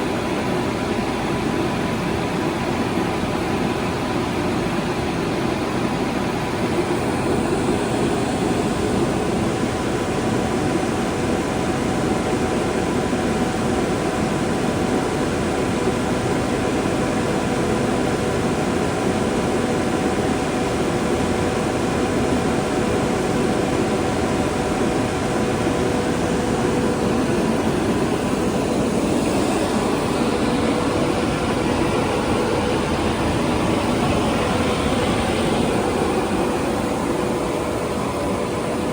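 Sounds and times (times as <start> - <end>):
machine whine: 0.0 - 38.9
glass washing machine running: 16.3 - 38.9.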